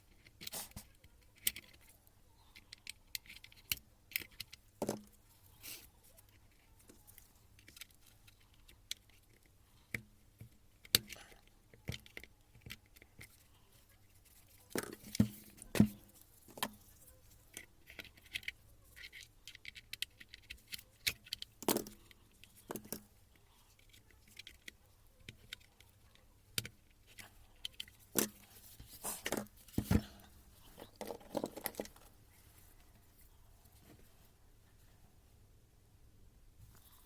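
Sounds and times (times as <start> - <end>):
tools clicking and knocking: 17.5 - 23.1, 23.9 - 32.1.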